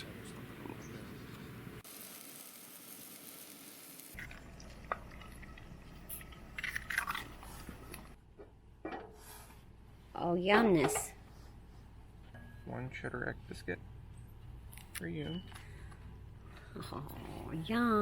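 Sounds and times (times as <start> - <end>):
food sizzling in a pan: 1.8 - 4.3.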